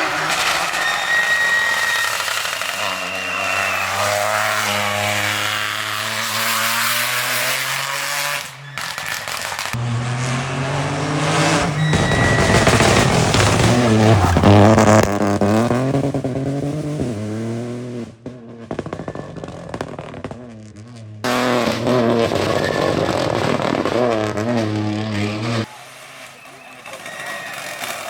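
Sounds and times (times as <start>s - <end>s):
car engine revving and shifting: 0.0s - 25.7s
exhaust crackling: 0.0s - 28.0s.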